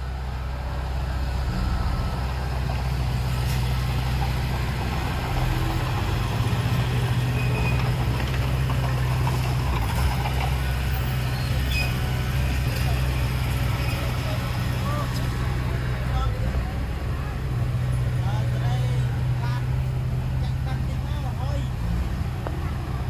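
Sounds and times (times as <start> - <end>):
heavy diesel engine droning: 0.0 - 23.0.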